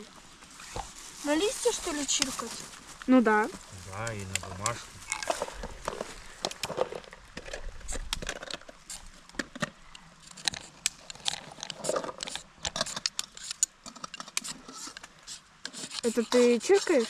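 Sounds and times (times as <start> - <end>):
knife scraping fire steel: 10.5 - 17.0.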